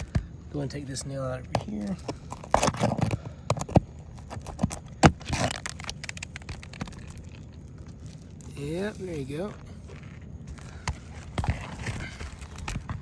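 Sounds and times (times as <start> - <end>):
nail prying scraping: 1.5 - 7.2.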